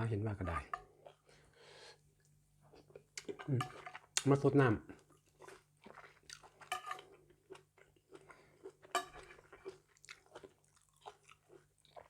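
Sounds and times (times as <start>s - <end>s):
person chewing and crunching food: 2.6s - 12.0s.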